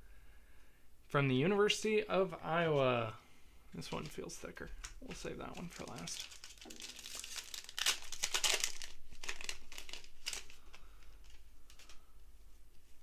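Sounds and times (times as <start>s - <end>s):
foil wrapper tearing and crinkling: 5.2s - 12.0s.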